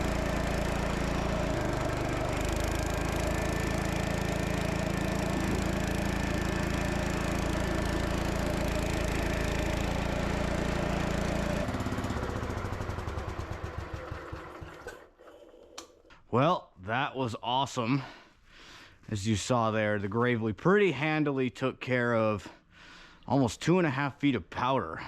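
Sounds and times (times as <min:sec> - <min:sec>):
snow blower engine running: 0:00.0 - 0:15.7.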